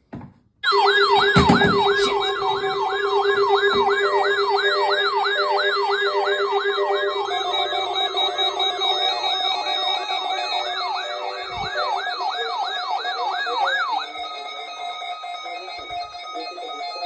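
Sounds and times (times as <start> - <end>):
electronic siren sweeping: 0.6 - 17.0
knocks: 1.2 - 3.0.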